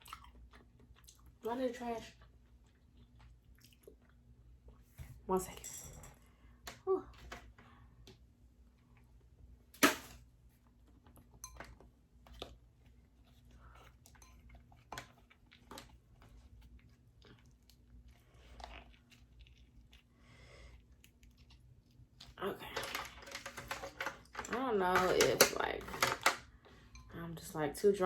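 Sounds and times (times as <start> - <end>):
chewing: 0.0 - 1.4, 2.1 - 4.9, 12.2 - 22.4.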